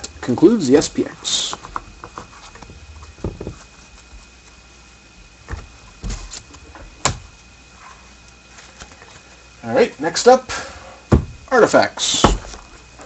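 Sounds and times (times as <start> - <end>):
card boxes being handled: 0.8 - 4.6.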